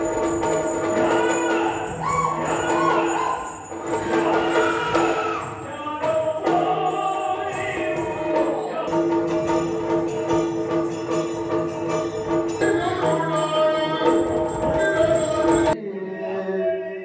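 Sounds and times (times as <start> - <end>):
jingling bells: 0.0 - 15.8
person singing: 0.9 - 9.2, 12.5 - 17.0.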